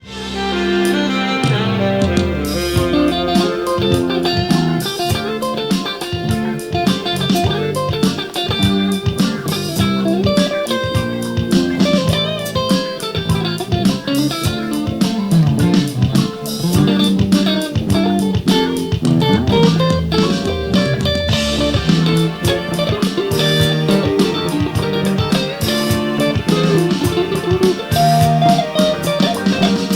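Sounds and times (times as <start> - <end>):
clean electric guitar: 0.0 - 29.9.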